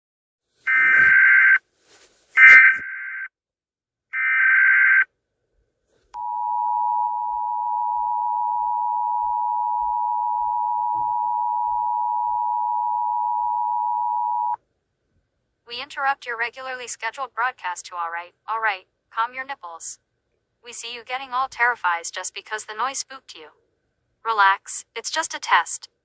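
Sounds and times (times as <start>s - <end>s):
warbling data tone bursts: 0.7s - 1.6s.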